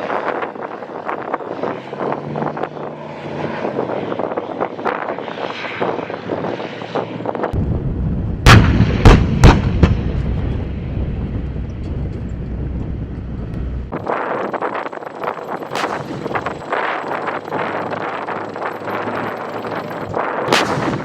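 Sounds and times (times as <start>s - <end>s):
low rumble: 7.6s - 21.0s
loud sharp gun blasts: 8.4s - 11.0s, 15.7s - 16.8s, 20.4s - 21.0s
distant gunfire cracks: 20.5s - 21.0s.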